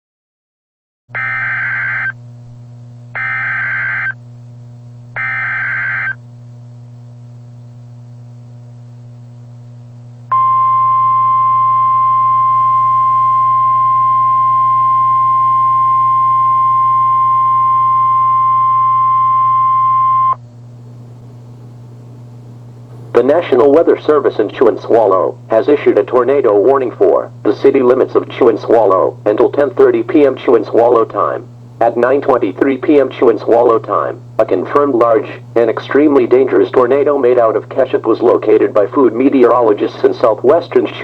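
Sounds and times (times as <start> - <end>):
steady high alert tone: 1.2 - 2.2, 3.2 - 4.2, 5.2 - 6.2
warbling digital data tones: 1.2 - 2.2, 3.2 - 4.2, 5.2 - 6.2
low hum: 1.2 - 41.0.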